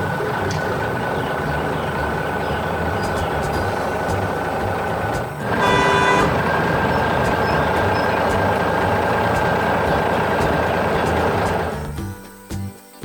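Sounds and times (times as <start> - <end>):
truck engine running: 0.0 - 12.0
horn toot: 5.4 - 8.6.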